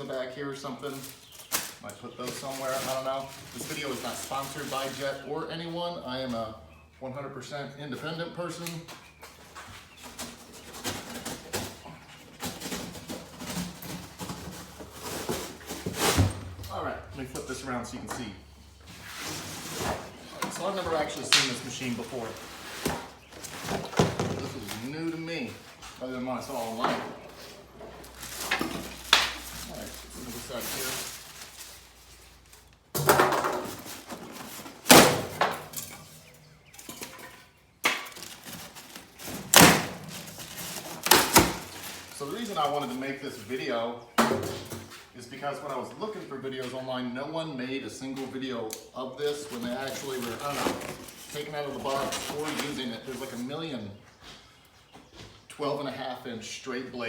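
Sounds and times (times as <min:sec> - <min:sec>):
styrofoam and cardboard rustling: 0:00.0 - 0:06.4, 0:08.5 - 0:46.8, 0:49.2 - 0:53.8
box scraping knocks: 0:19.3 - 0:24.8.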